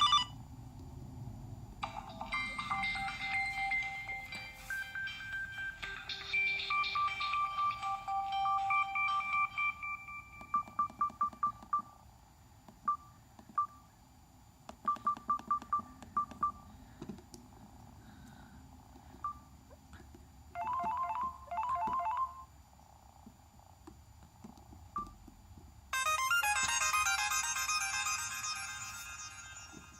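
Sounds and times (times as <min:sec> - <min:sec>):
phone ringtone melody: 0:00.0 - 0:00.4, 0:01.8 - 0:11.1, 0:20.6 - 0:22.5, 0:26.0 - 0:29.9
trilling ringtone: 0:00.0 - 0:00.4, 0:01.8 - 0:11.2, 0:20.6 - 0:22.5, 0:26.0 - 0:29.9.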